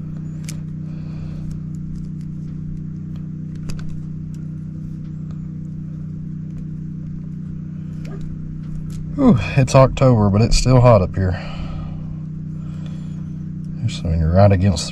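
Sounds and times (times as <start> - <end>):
wires clicking and rustling: 0.0 - 9.2
low mechanical hum: 0.0 - 14.9.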